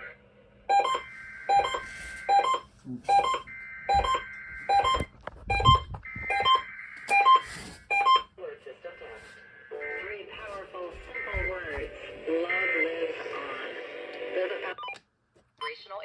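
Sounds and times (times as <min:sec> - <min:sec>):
regular beeping pulse: 0:00.7 - 0:08.3.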